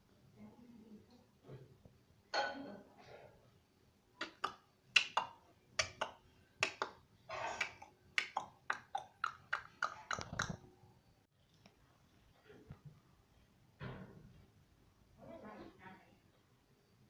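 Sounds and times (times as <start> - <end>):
parrot clicks and chirps: 4.2 - 10.6.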